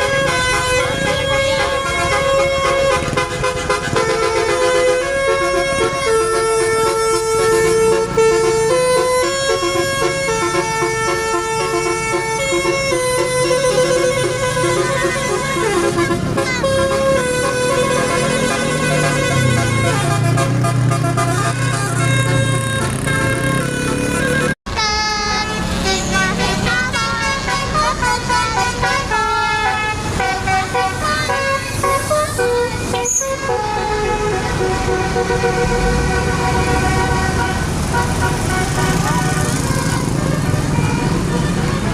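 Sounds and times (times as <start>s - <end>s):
multi-tone bus horn tune: 0.0s - 41.9s.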